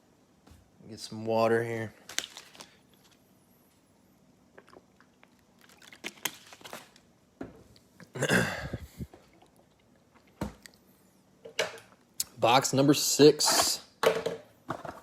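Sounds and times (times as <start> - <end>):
person swallowing water: 4.5 - 5.3.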